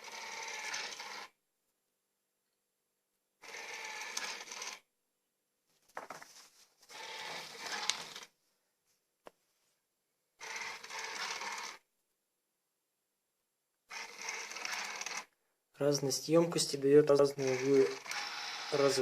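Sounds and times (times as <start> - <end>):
robot vacuum cleaner clattering: 17.4 - 19.0.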